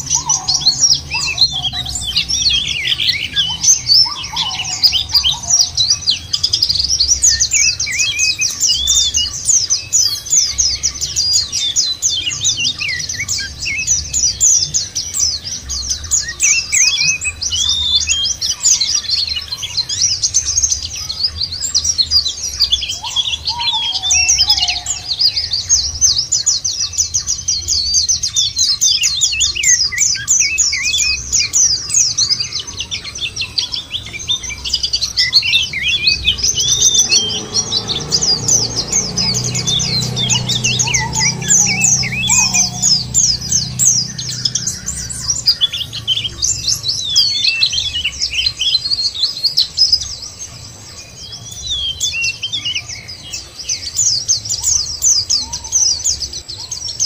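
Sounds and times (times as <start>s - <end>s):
birds twittering trills: 0.0s - 57.0s
lower slurred bird call: 33.4s - 48.1s.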